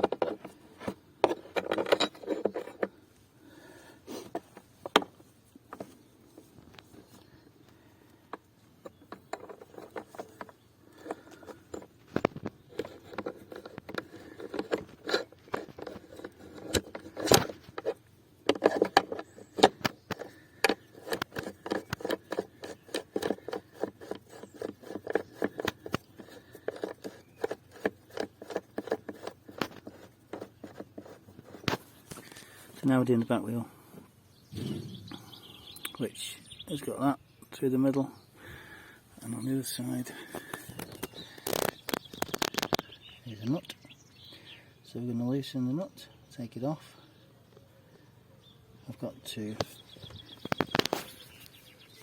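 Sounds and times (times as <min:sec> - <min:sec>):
metal tools clinking and scraping: 0:00.0 - 0:02.9, 0:08.8 - 0:32.4.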